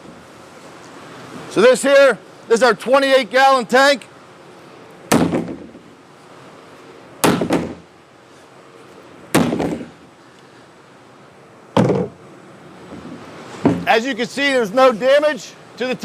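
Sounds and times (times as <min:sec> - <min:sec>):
sledgehammer striking plastic tank: 0:05.1 - 0:05.7, 0:07.2 - 0:07.8, 0:09.4 - 0:09.9, 0:11.8 - 0:12.2, 0:13.6 - 0:13.9.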